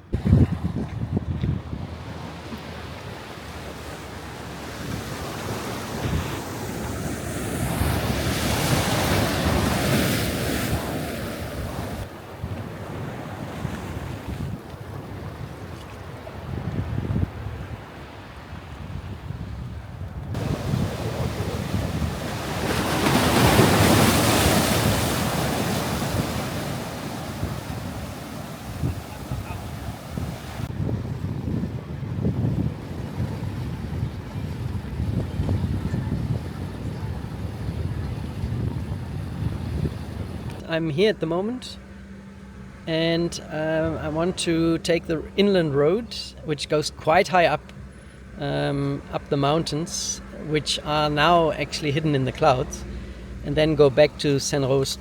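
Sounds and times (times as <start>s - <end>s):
wave breaking: 0.0s - 18.8s, 20.3s - 40.5s
wind buffeting microphone: 0.0s - 40.6s
ocean surf washing onto beach: 0.0s - 45.4s.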